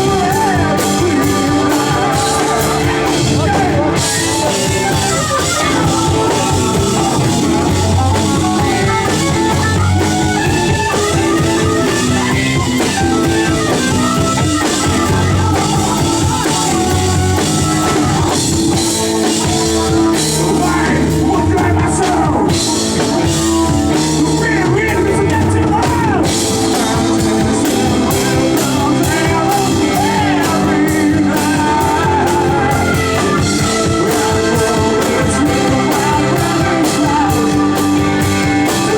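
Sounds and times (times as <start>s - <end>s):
live rock band playing: 0.0s - 38.9s.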